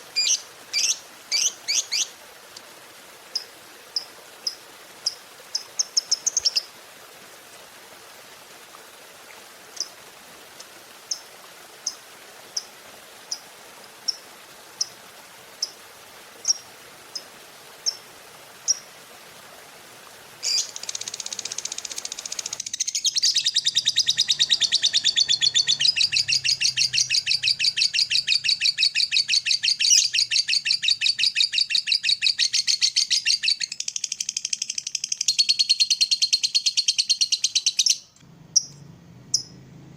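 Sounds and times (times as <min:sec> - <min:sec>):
lovebird chirping and trilling: 0:00.2 - 0:02.1, 0:20.4 - 0:39.6.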